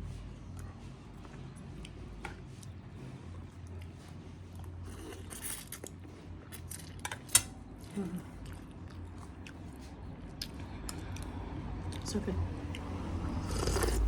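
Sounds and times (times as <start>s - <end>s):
steady low hum: 0.0s - 14.0s
food crunching and clicks: 4.5s - 12.9s.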